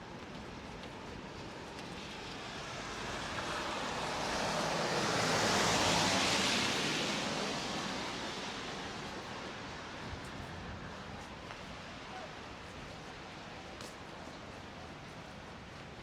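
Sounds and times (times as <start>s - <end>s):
vehicle tyre noise passing: 2.0s - 9.9s.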